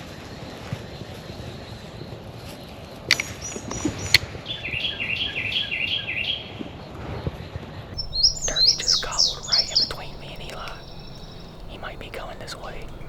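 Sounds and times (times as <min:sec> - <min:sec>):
higher busier bird song: 0:08.0 - 0:13.0
songbird whistling: 0:08.0 - 0:13.0.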